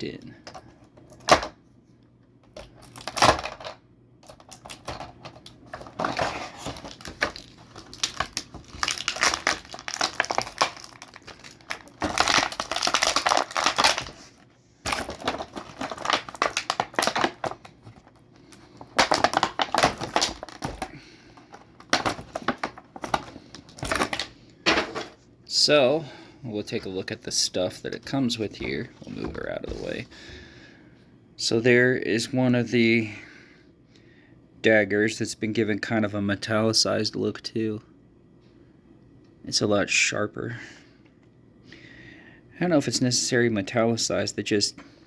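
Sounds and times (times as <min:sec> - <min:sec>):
plastic packaging crinkling: 0:02.6 - 0:03.6, 0:04.3 - 0:24.4.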